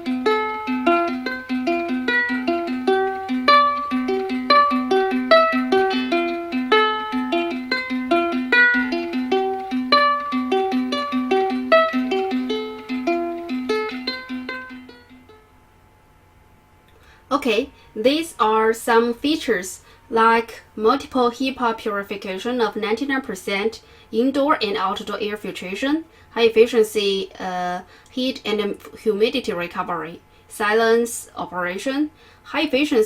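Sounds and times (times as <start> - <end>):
plucked string tune: 0.0 - 15.6.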